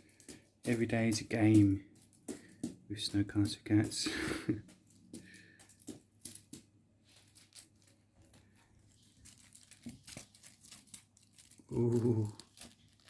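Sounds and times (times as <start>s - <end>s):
cat claws scratching and tapping: 0.0s - 13.0s.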